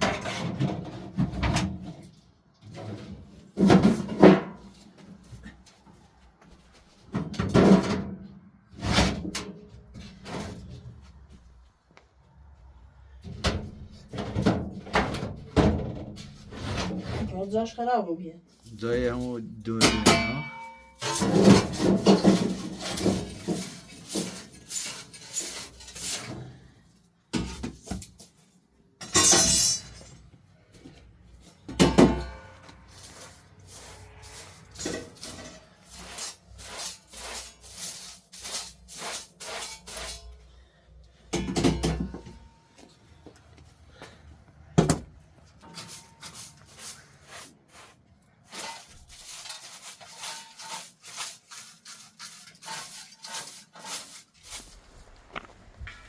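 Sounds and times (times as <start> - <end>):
pots and dishes clattering: 19.8 - 26.4, 31.7 - 32.6, 41.3 - 42.6.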